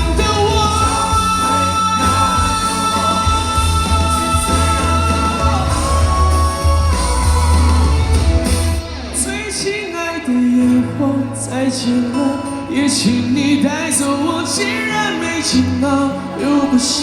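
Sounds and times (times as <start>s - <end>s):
heavy steady bass: 0.0s - 10.0s
live band playing pop-rock ballad: 0.0s - 17.0s.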